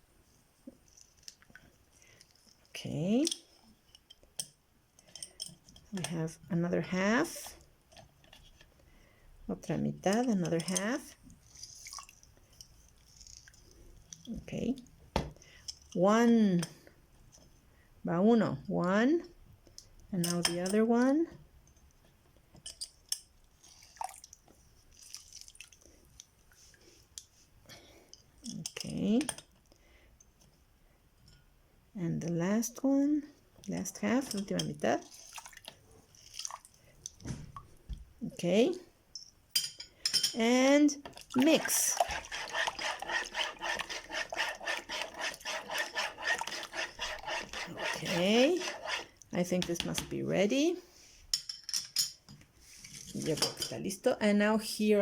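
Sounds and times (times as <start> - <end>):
juice dripping and squishing: 23.6 - 26.3, 35.1 - 37.3
utensil scraping round container: 41.4 - 49.2.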